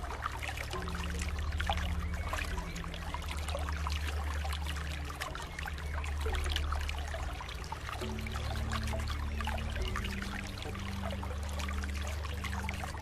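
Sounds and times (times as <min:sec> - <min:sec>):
low steady drone: 0:00.0 - 0:13.0
water trickling and splashing: 0:00.0 - 0:13.0.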